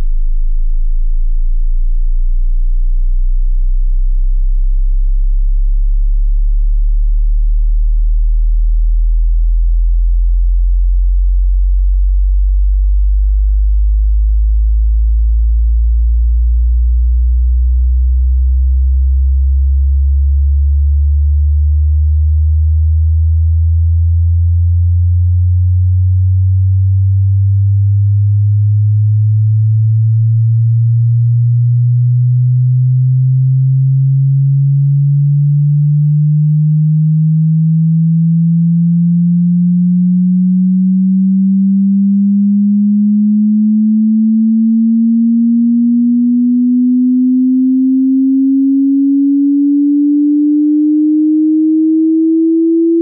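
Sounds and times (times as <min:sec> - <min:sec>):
sine tone sweeping upward: 0:26.6 - 0:53.0.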